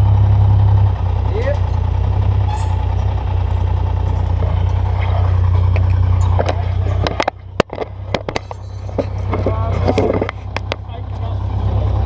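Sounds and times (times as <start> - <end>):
truck engine idling rumble: 0.0 - 12.0.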